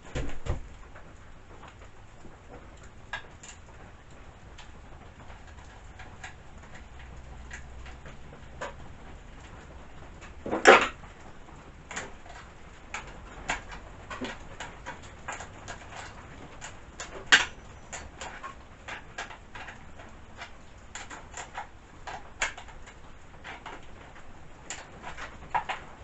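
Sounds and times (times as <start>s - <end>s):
chainsaw parts clicking and knocking: 4.6s - 11.0s, 11.9s - 26.0s
parts clattering: 10.2s - 11.1s.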